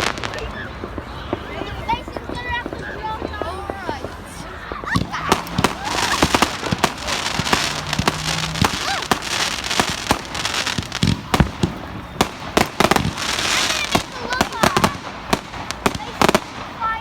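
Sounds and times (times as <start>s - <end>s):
fireworks bangs and crackles: 0.0s - 17.0s
steady hiss: 3.6s - 17.0s.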